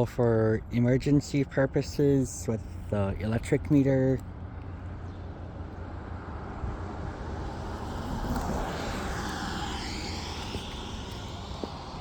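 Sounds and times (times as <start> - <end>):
vehicle passing by: 5.4 - 12.0.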